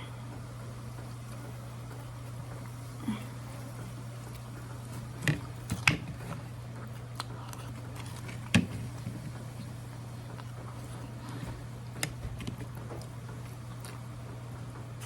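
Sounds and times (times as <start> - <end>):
steady low hum: 0.0 - 15.0
person chewing: 6.9 - 12.0, 12.6 - 14.2.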